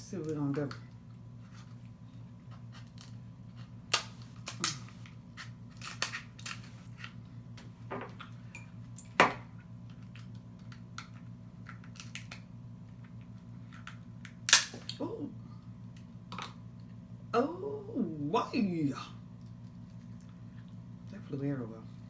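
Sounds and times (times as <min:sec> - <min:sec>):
crab shell cracking: 0:09.9 - 0:12.5.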